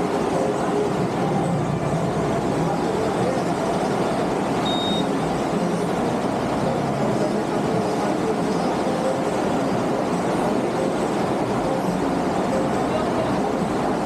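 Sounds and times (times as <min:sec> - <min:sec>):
short high beep: 0:04.6 - 0:05.2.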